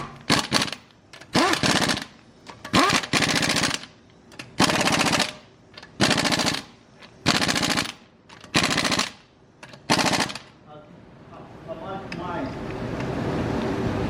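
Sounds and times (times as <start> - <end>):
impact wrench hammering: 0.0 - 10.5.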